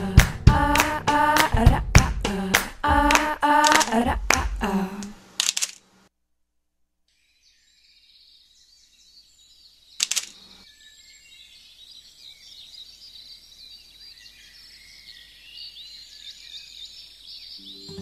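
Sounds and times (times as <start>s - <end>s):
songbirds singing: 7.2s - 18.0s
sharp double click: 10.0s - 10.4s.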